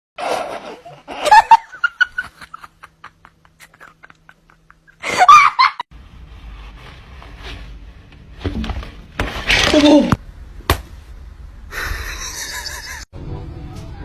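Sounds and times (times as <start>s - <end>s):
person laughing loudly: 0.6s - 5.8s, 11.7s - 13.1s
quiet giggles: 3.0s - 5.0s.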